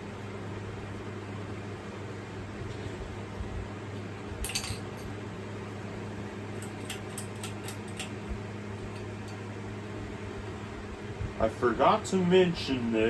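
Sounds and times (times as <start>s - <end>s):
ceiling fan running: 0.0s - 13.0s
light clinks: 4.4s - 5.1s.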